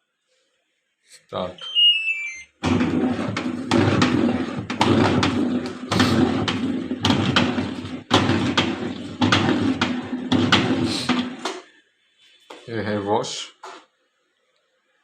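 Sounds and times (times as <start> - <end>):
washing machine clunks: 2.6 - 11.6
washing machine grinding: 2.6 - 11.6.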